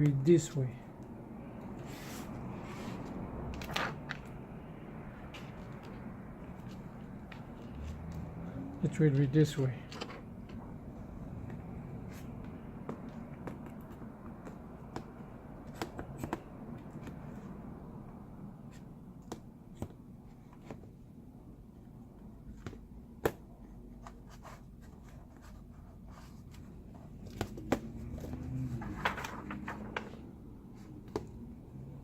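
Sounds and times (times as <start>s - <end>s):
clicks and taps of laptop parts: 19.2s - 20.0s.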